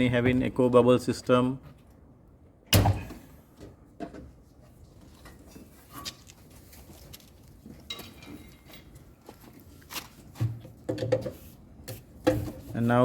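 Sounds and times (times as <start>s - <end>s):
tools and machine parts clinking: 7.8s - 9.2s.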